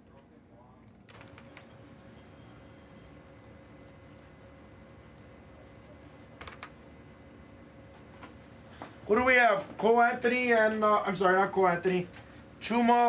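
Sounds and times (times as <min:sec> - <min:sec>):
typing on computer keyboard: 0:01.1 - 0:06.7.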